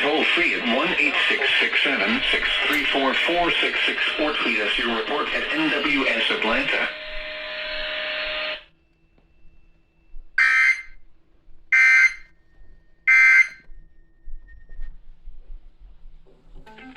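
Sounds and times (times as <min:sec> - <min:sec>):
buzzy data bursts: 0:00.0 - 0:08.7.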